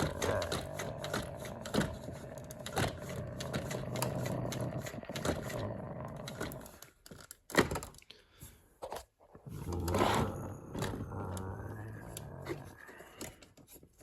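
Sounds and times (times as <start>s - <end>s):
plastic toys clicking and knocking: 0.0s - 8.1s.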